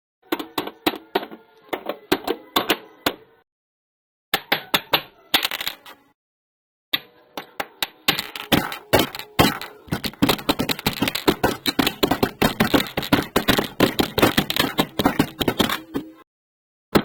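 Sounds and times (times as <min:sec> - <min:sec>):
knocking on hard object: 0:08.2 - 0:16.2.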